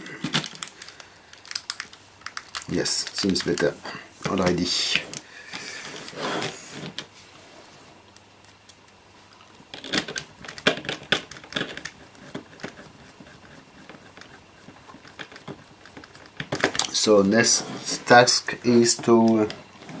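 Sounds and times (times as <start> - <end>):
plastic parts clicking: 0.2 - 5.2.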